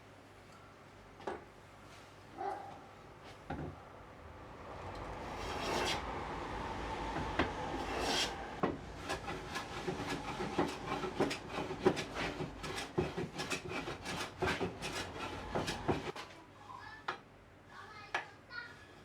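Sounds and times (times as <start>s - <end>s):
hand plane shaving wood: 5.1s - 16.2s
plane knocking on wood: 8.6s - 16.1s.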